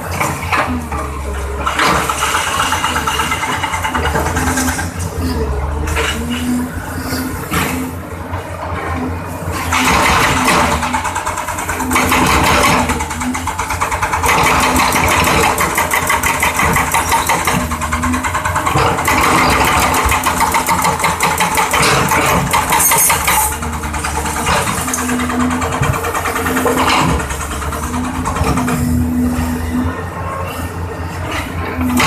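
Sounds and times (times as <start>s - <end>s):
diesel engine running: 0.0s - 32.0s
hydraulic breaker hammering concrete: 1.6s - 5.1s, 9.6s - 29.5s.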